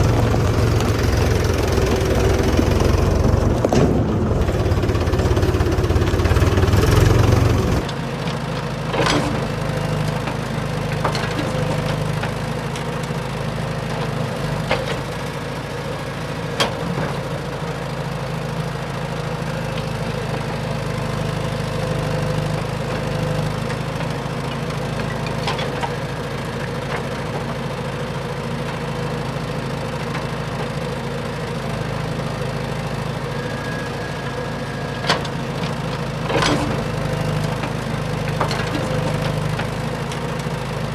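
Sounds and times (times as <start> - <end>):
low motor hum: 0.0 - 8.0.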